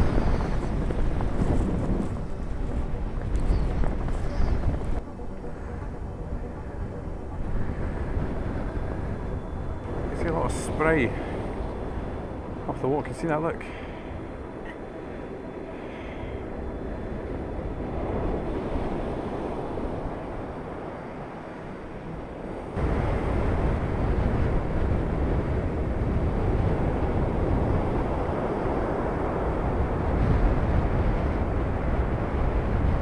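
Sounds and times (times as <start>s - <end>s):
heavy low rumbling buffeting: 0.0s - 12.7s, 22.8s - 33.0s
storm wind rushing over microphone: 0.0s - 33.0s.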